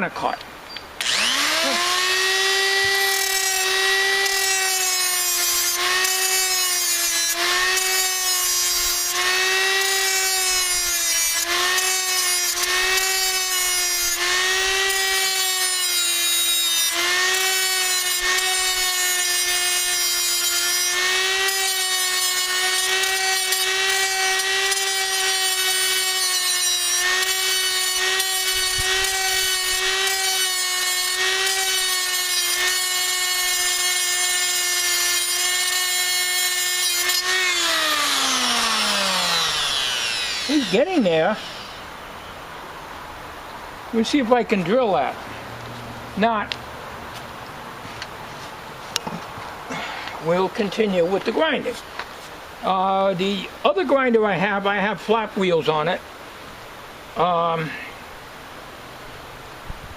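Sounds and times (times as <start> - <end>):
cut-off grinder cutting metal: 1.0 - 42.0.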